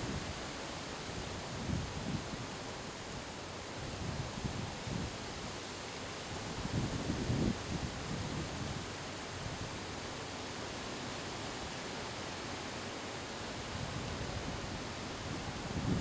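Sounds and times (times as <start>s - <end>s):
wind rustling leaves in trees: 0.0s - 16.0s
wind buffeting microphone: 15.6s - 16.0s.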